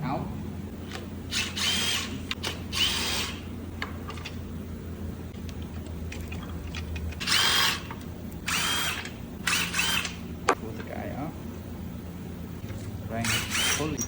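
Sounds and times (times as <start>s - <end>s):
cordless power tool whine: 1.3s - 3.5s, 7.2s - 10.2s, 13.2s - 14.0s.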